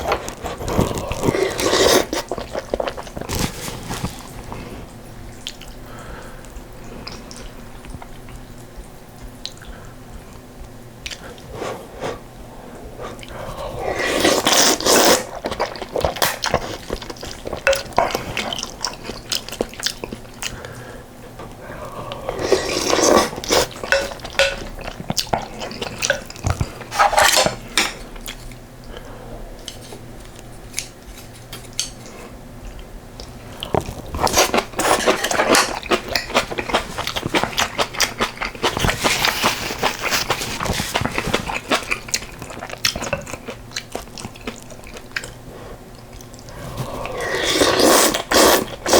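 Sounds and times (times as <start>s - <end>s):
person chewing: 0.0s - 5.9s, 13.0s - 48.9s
utensils clinking against bowl: 22.4s - 28.0s.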